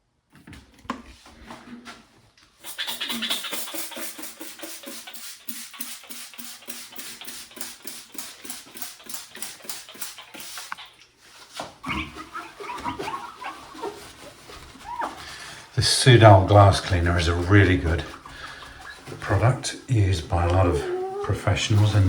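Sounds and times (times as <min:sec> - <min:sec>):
paper towel squeaking on glass: 0:02.6 - 0:08.2, 0:08.8 - 0:22.0.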